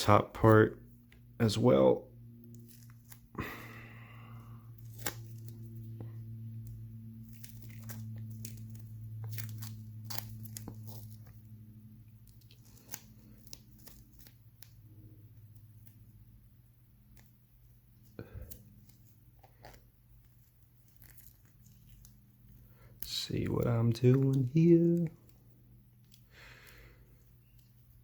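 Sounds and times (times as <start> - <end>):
steady low hum: 0.0 - 28.0
adhesive tape pulled and torn: 4.8 - 5.6, 6.6 - 11.4, 12.2 - 14.8.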